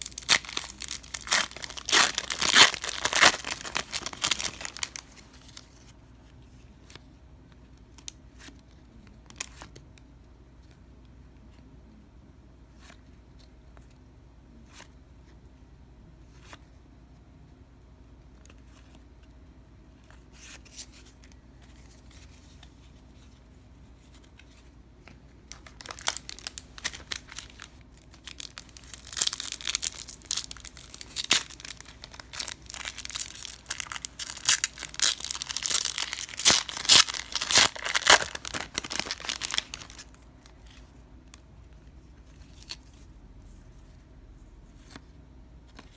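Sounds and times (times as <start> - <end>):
wrapper tearing and crinkling: 0.0 - 5.6, 25.5 - 40.2.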